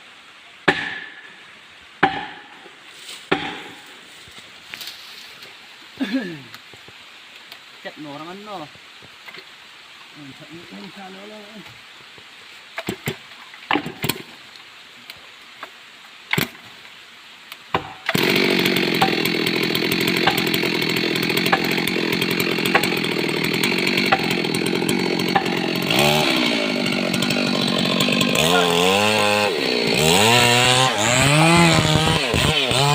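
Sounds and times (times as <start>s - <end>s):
sharp knocks: 2.0s - 2.5s, 3.3s - 3.8s
chainsaw running: 18.1s - 32.9s.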